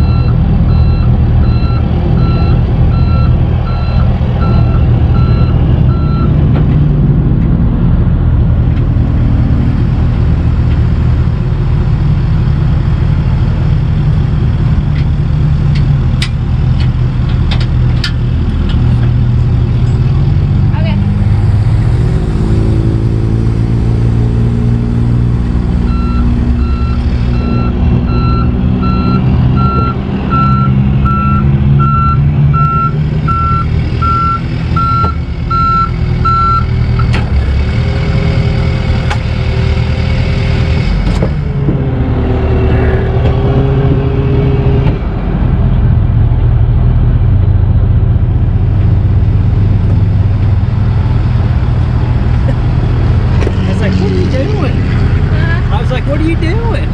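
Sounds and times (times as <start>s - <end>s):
back-up alarm beeping: 0.0s - 6.3s, 25.9s - 36.7s
truck engine running: 0.0s - 56.9s.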